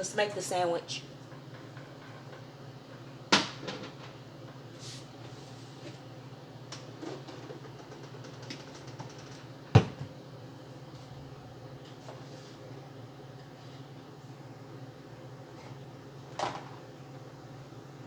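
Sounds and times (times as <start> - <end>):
steady low hum: 0.0 - 3.4.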